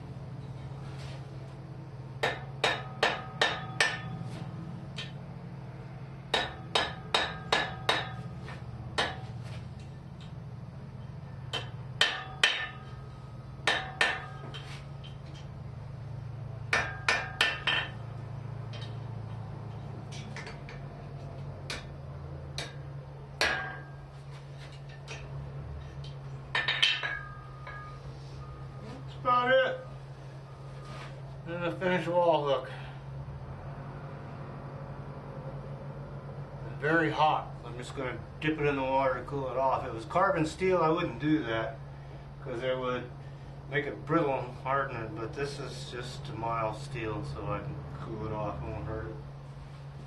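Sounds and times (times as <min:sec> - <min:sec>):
steady low hum: 0:00.0 - 0:50.0
hammer striking steel on anvil: 0:02.2 - 0:04.2, 0:05.0 - 0:05.2, 0:06.3 - 0:08.3, 0:09.0 - 0:09.4, 0:11.5 - 0:15.2, 0:16.7 - 0:18.1, 0:21.7 - 0:24.1, 0:26.5 - 0:28.6.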